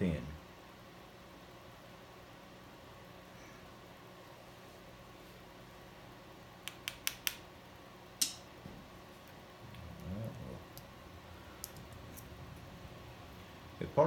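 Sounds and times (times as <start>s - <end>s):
low hum: 8.8s - 14.0s.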